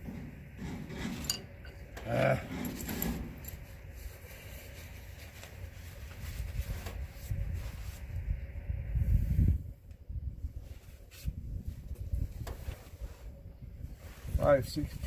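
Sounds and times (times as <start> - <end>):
metal clatter: 0.0 - 3.8
low steady rumble: 0.0 - 15.0.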